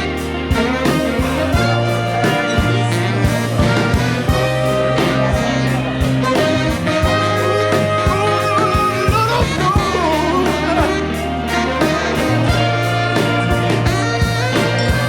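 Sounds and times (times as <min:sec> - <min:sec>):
background music with beat: 0:00.0 - 0:15.0.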